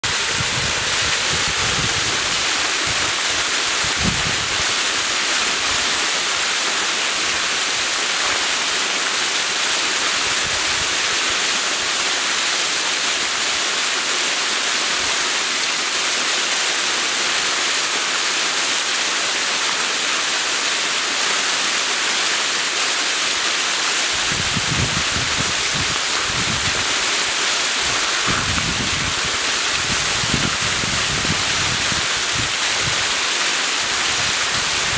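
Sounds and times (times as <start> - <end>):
wind buffeting microphone: 0.0 - 4.8, 24.2 - 27.0, 27.8 - 33.1
waterfall rushing: 0.0 - 34.9.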